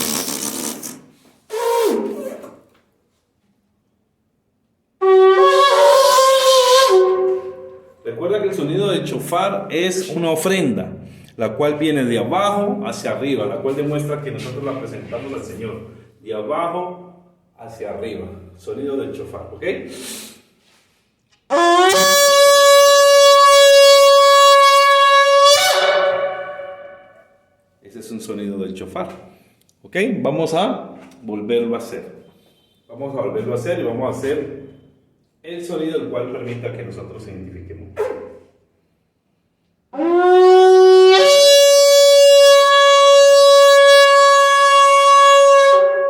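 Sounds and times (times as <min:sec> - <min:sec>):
shofar horn long note: 0:05.0 - 0:07.9, 0:21.5 - 0:27.3, 0:40.0 - 0:46.0.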